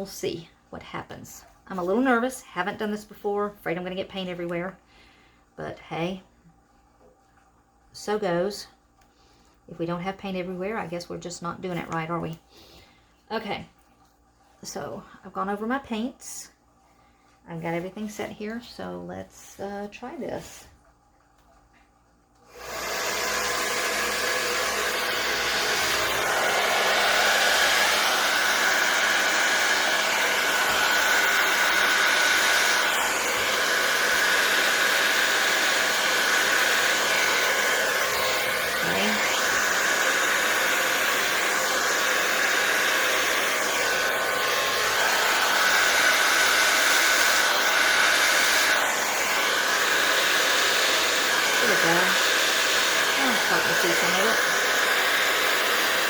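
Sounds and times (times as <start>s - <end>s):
hair dryer blowing air: 1.7s - 3.1s, 22.4s - 56.0s.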